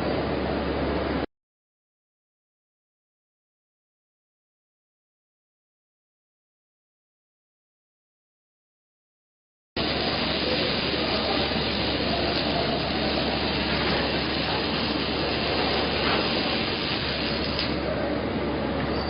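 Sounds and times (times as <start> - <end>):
machinery hiss and rumble: 9.8 - 19.0.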